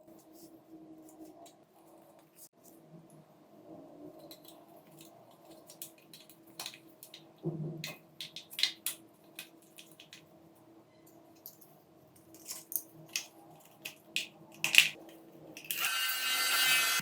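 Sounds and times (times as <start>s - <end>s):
fan motor whirring: 15.7s - 17.0s.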